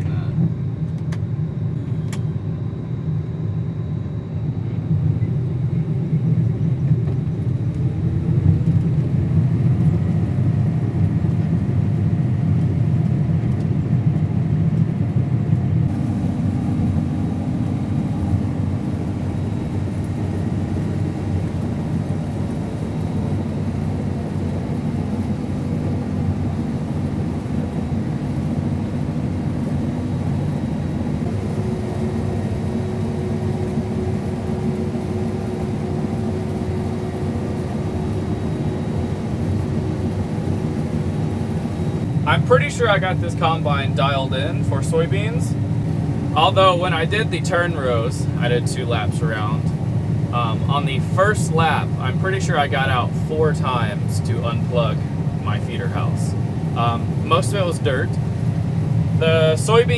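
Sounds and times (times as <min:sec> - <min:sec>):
combine harvester running: 0:15.8 - 0:59.9.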